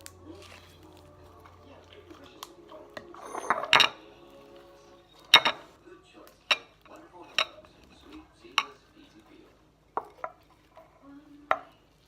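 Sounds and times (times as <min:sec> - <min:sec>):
utensils clinking against a dish: 0:01.8 - 0:04.4, 0:05.1 - 0:12.0.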